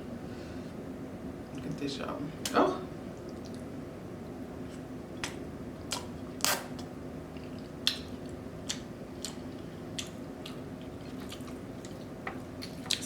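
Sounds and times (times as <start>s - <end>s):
low steady hum: 0.0s - 13.0s
chewing: 5.2s - 13.0s.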